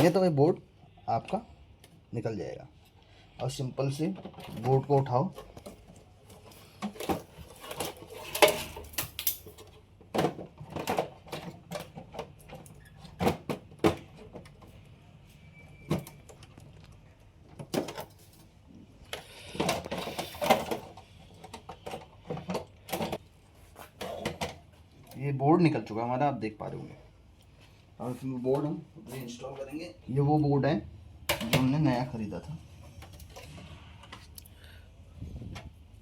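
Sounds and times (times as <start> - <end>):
clicks and clatter of metal parts: 4.1 - 14.8.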